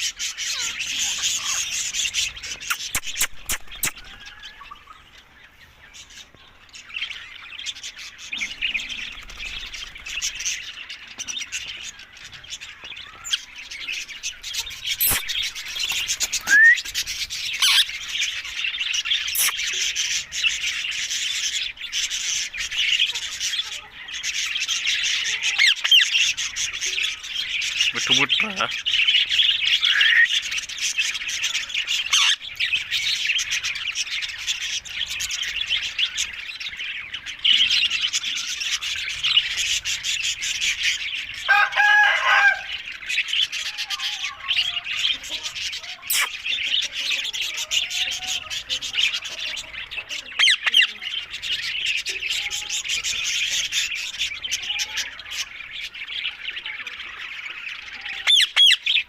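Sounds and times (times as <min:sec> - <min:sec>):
parakeets chattering and chirping: 0:00.0 - 0:59.0
harsh parakeet call: 0:14.2 - 0:59.0.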